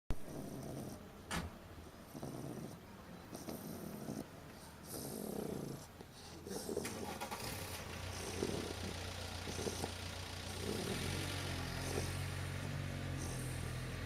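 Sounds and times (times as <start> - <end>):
puppy snoring softly: 0.1 - 1.1, 1.8 - 14.0
car engine hum: 6.8 - 14.0.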